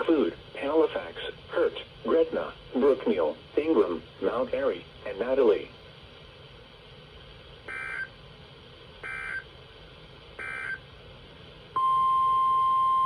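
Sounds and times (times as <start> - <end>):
steady warning alarm tone: 7.7 - 8.1, 9.0 - 9.5, 10.4 - 10.8, 11.8 - 13.0
warbling data tone bursts: 7.7 - 8.1, 9.0 - 9.5, 10.4 - 10.8.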